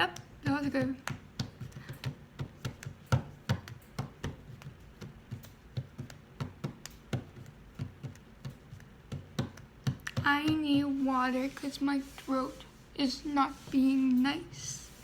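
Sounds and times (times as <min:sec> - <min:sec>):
hands tapping on hard surface: 0:00.1 - 0:10.9.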